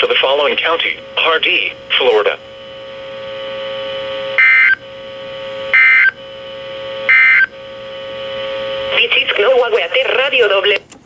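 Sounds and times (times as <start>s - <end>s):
digital data squawks: 5.7s - 6.2s.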